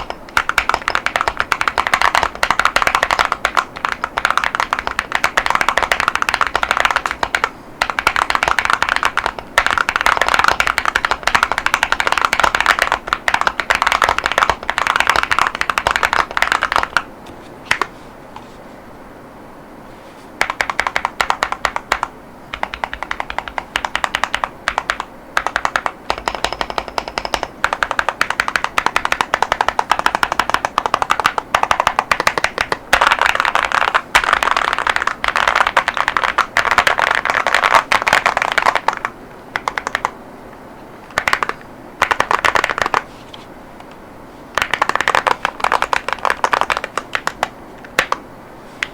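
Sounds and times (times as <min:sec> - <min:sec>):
mechanical keyboard key clacks: 0:20.4 - 0:40.1.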